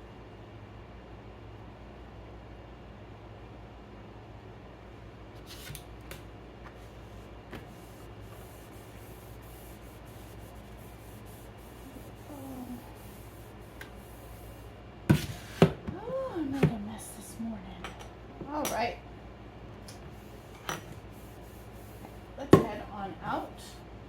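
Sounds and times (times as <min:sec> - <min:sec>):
steady low hum: 0:00.0 - 0:24.0
cloth rubbing a counter: 0:06.7 - 0:15.8, 0:20.0 - 0:22.8.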